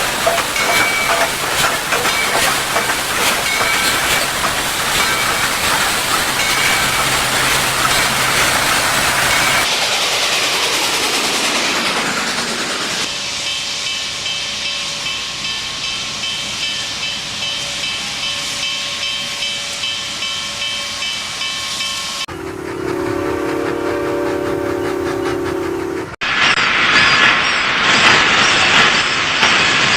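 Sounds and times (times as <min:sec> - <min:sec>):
steam hiss: 0:00.0 - 0:29.9
steam whistle blast: 0:22.3 - 0:26.2.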